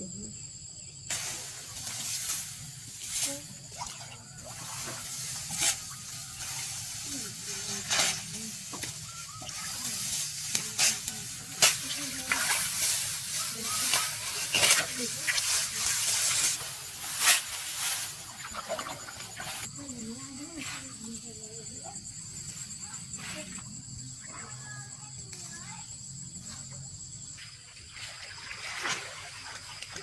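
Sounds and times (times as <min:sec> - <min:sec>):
rice stalks rustling: 0:01.1 - 0:19.7.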